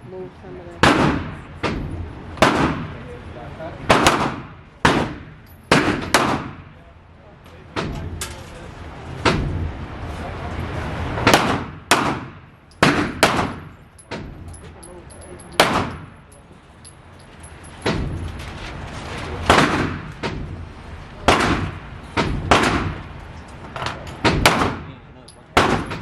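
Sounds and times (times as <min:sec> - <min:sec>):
gunshots: 0:00.8 - 0:03.0, 0:03.9 - 0:06.7, 0:11.2 - 0:13.7, 0:15.6 - 0:16.1, 0:19.4 - 0:20.4, 0:21.2 - 0:23.0, 0:24.2 - 0:24.9, 0:25.6 - 0:26.0.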